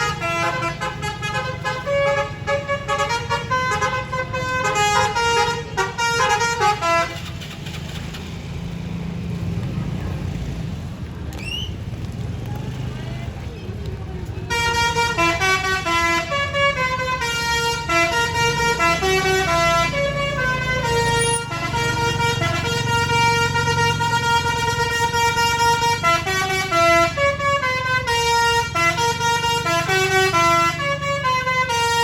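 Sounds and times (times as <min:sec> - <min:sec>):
bus horn playing melody: 0:00.0 - 0:07.4, 0:14.5 - 0:32.0
bus engine running: 0:00.0 - 0:32.0.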